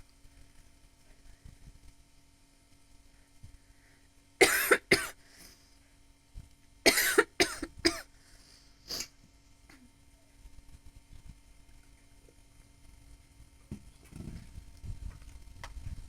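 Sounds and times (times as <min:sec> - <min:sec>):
woman coughing: 0:04.4 - 0:05.2, 0:06.9 - 0:08.1.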